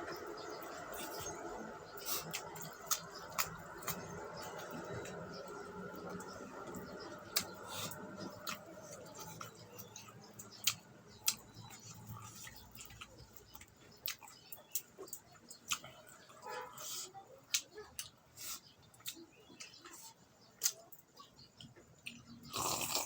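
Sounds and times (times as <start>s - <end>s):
person chewing: 0.7s - 1.4s, 2.0s - 5.3s, 6.1s - 15.9s, 22.0s - 23.0s.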